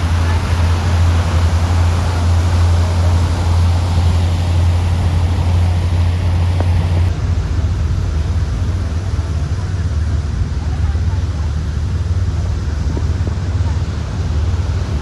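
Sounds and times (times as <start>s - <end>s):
wind noise: 0.0s - 9.4s
ferry engine rumble: 0.0s - 15.0s
rushing water: 0.0s - 15.0s.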